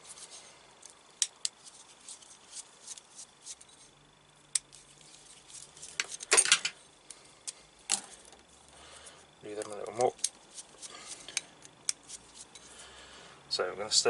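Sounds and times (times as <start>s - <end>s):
hand tools clicking: 9.6s - 12.7s.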